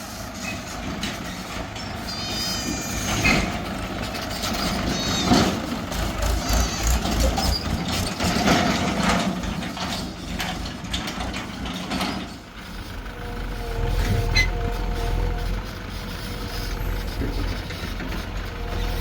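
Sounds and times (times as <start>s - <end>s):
heavy diesel machinery: 0.0s - 19.0s
metallic clanking and rattling: 3.1s - 13.1s.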